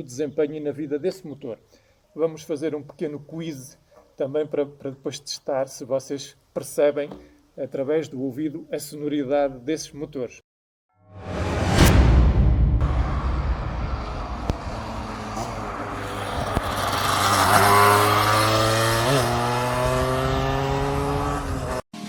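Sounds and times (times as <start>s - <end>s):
motorcycle engine accelerating: 12.8s - 21.8s.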